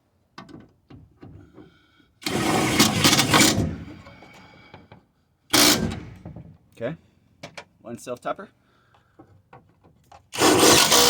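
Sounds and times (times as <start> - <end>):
power drill driving screw: 2.2 - 3.6, 5.5 - 6.0, 10.4 - 11.0.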